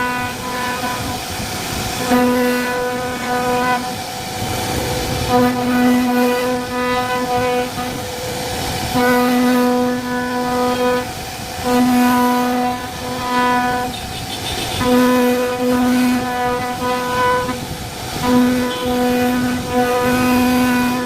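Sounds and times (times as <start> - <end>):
high router machine whine: 0.0 - 21.0.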